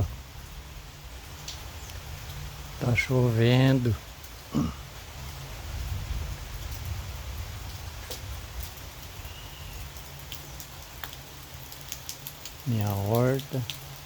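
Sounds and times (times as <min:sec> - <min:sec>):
steady rain falling: 0:00.0 - 0:14.0
drops ticking on a surface: 0:09.9 - 0:14.0.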